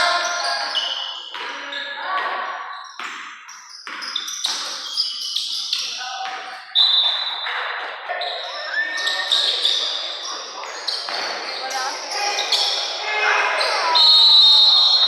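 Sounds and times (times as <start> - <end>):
basketball bouncing on court: 0.0 - 7.8, 10.7 - 12.8
voices of players and spectators: 0.0 - 15.0.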